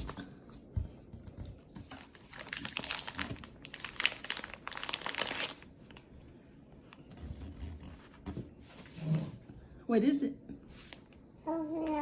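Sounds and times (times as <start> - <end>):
plastic wrapper crinkling: 1.9 - 6.1.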